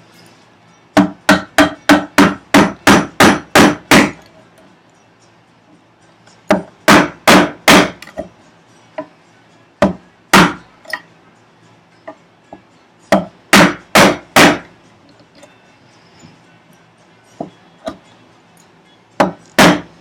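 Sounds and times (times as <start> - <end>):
mallet striking chisel: 1.0 - 4.2, 6.4 - 8.3, 9.8 - 11.1, 12.0 - 14.7, 17.4 - 18.1, 19.2 - 20.0.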